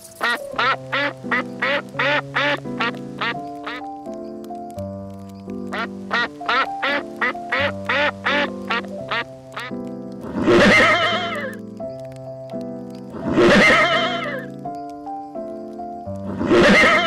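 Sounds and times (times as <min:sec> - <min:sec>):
background music: 0:00.0 - 0:17.0
animal calls: 0:00.1 - 0:04.3, 0:05.6 - 0:11.6, 0:13.2 - 0:14.6, 0:16.3 - 0:17.0.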